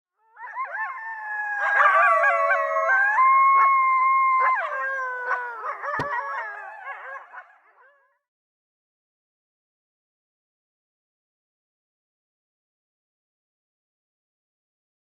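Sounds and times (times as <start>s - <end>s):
coyotes howling and yipping: 0.1s - 8.3s.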